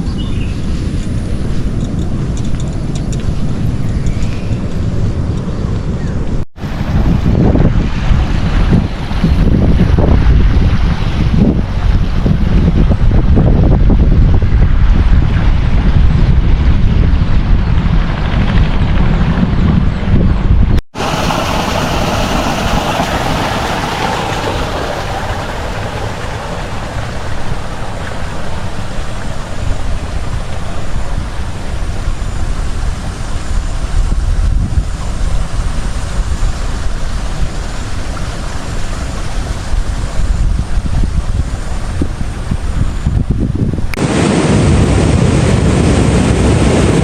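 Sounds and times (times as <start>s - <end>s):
wind buffeting microphone: 0.0s - 47.0s
sea surf: 6.6s - 13.1s, 20.9s - 43.0s, 43.8s - 47.0s.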